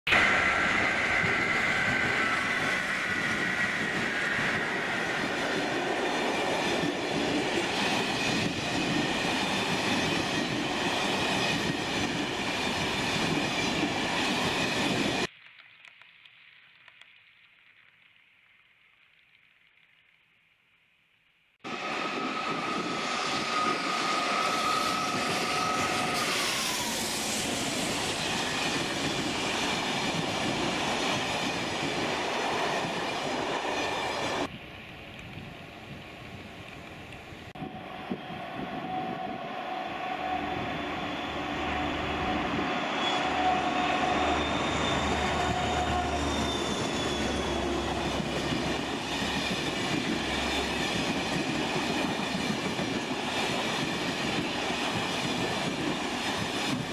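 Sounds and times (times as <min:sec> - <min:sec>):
train rolling noise: 0:00.1 - 0:15.3, 0:21.6 - 0:56.9.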